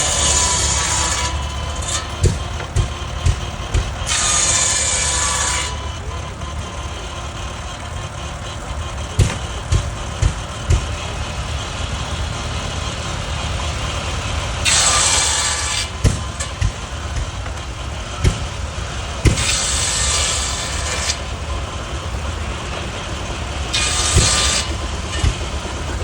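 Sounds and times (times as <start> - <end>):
tractor engine running: 0.0 - 26.0
sharp knocks: 0.3 - 4.5, 9.2 - 11.0, 14.7 - 20.1, 23.8 - 25.7.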